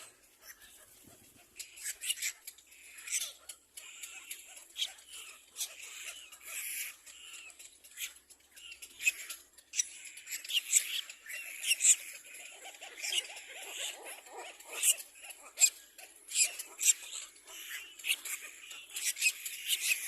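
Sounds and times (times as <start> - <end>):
chicks squeaky begging calls: 0.0 - 20.0.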